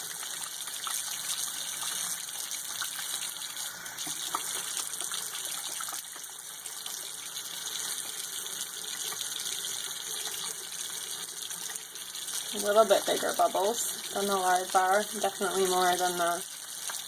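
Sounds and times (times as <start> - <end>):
faucet running: 0.0 - 17.0.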